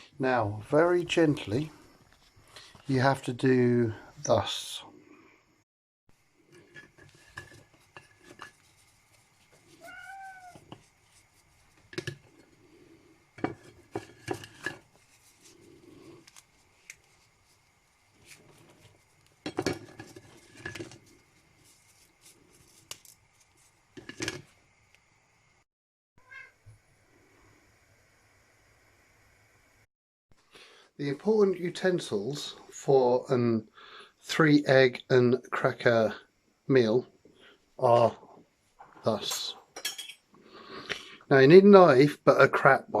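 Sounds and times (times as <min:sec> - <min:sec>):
cutlery and crockery clinking: 0:19.4 - 0:21.0, 0:38.9 - 0:40.3.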